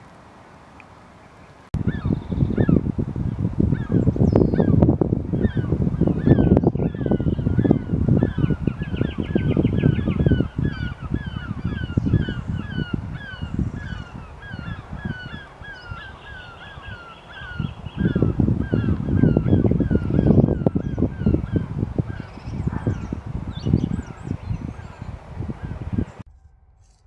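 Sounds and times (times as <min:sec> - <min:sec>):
geese honking: 0:10.0 - 0:26.1.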